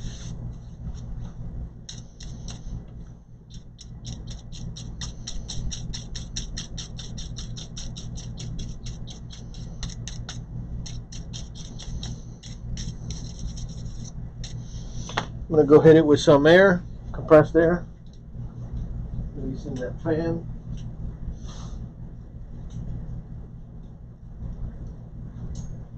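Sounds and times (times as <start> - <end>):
small brush scrubbing: 0.0 - 1.1, 1.9 - 2.8, 3.5 - 15.2
steady low hum: 0.0 - 25.9.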